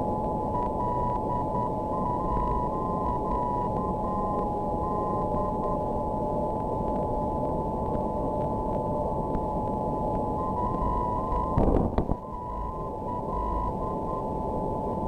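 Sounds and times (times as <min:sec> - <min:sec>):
static hiss: 0:00.0 - 0:15.0
steady radio whistle tone: 0:00.0 - 0:15.0
morse code beeps: 0:00.4 - 0:06.0, 0:10.3 - 0:14.4.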